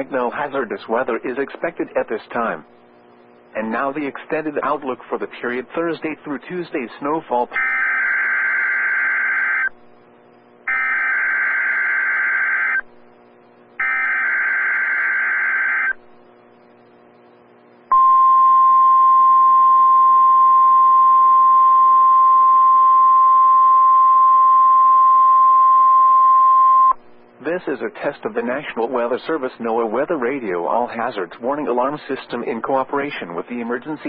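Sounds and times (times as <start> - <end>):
buzzy digital data tones: 1.3 - 26.9
steady alarm tone: 7.5 - 9.8, 10.6 - 13.2, 13.8 - 16.0.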